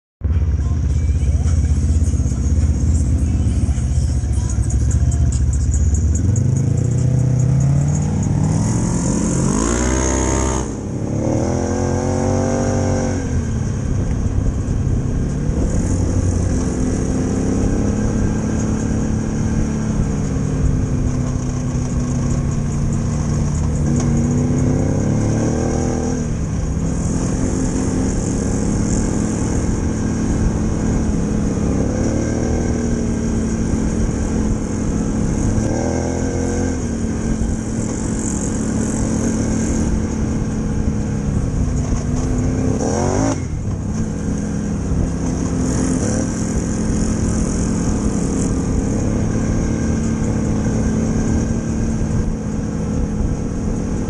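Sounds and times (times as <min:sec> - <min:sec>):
engine revving hum: 0:00.2 - 0:54.0.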